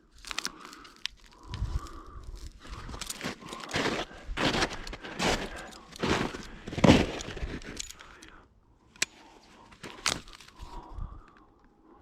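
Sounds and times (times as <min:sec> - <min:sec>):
footsteps crunching: 0:00.3 - 0:08.0.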